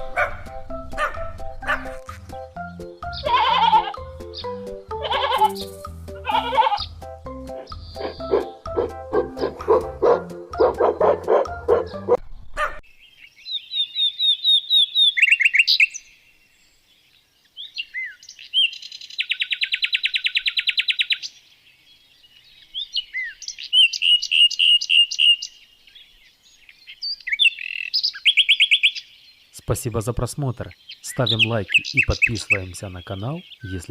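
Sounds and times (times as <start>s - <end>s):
songbird singing: 0.0s - 33.9s
farm animal calling: 3.0s - 12.8s.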